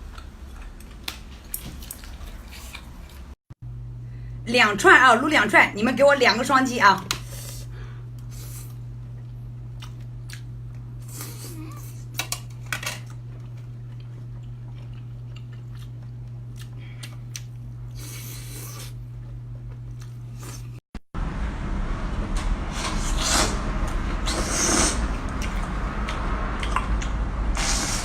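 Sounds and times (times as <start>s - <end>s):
person chewing meat: 0.0s - 3.4s, 8.2s - 12.1s, 13.1s - 20.8s
steady low hum: 0.0s - 28.0s.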